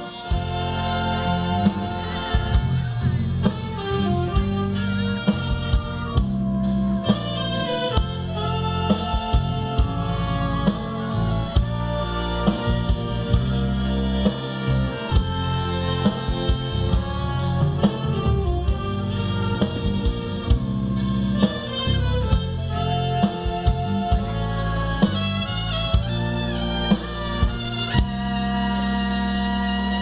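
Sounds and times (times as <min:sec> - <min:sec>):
orchestra playing: 0:00.0 - 0:30.0.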